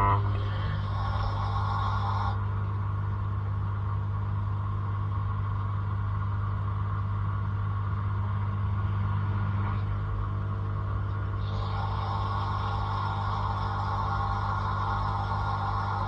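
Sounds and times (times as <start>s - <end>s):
dishwasher pump hum: 0.0s - 4.2s, 9.8s - 16.0s.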